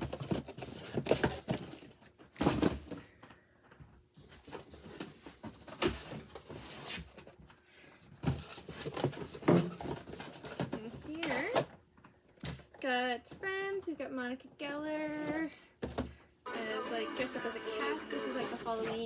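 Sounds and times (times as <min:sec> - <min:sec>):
cardboard and plastic packaging rustling: 0:00.0 - 0:03.4, 0:04.1 - 0:11.8, 0:18.6 - 0:19.0.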